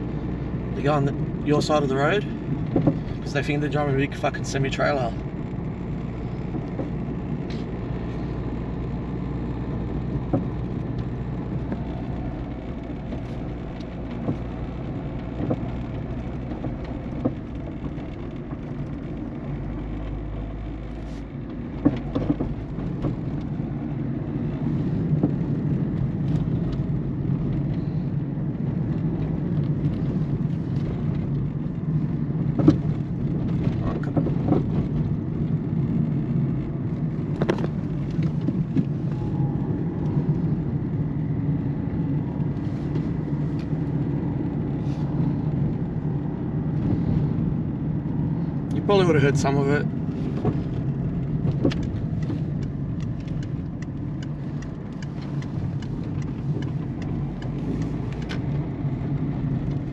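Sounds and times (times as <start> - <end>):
car engine and road noise: 0.0 - 59.9
suspension knocks over bumps: 1.5 - 3.3, 10.0 - 27.8, 28.6 - 41.0, 49.8 - 59.9.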